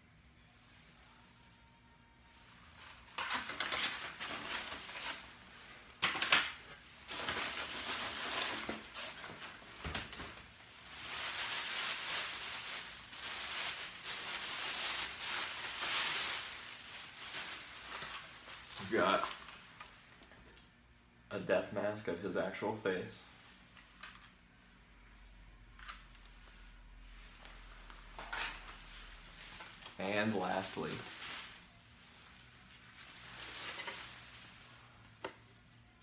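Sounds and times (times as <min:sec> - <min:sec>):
packaging crinkling and rustling: 0:02.8 - 0:05.4, 0:06.0 - 0:19.9, 0:32.3 - 0:34.6.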